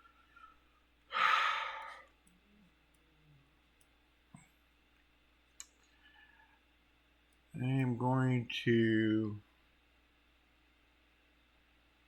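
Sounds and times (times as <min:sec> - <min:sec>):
man sighing: 0:01.1 - 0:02.0.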